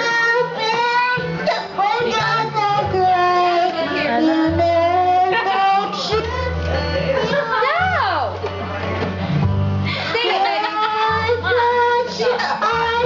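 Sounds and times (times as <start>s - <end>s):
child singing: 0.0s - 6.7s, 10.4s - 13.0s
backing music with bass: 0.0s - 13.0s
child hiccups: 1.4s - 1.8s.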